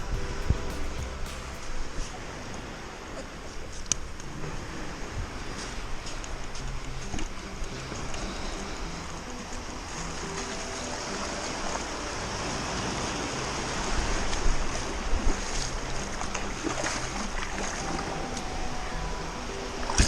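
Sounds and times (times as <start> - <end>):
sea waves washing: 4.3 - 20.0.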